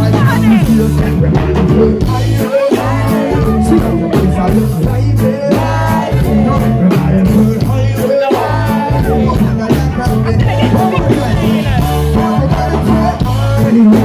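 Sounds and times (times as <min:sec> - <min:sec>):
live reggae band music: 0:00.0 - 0:14.0.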